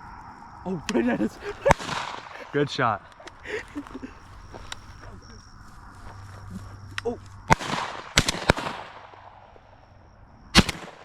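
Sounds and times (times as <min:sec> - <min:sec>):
shotgun blasts with echo: 0:01.4 - 0:02.6, 0:07.5 - 0:09.7, 0:10.6 - 0:11.0.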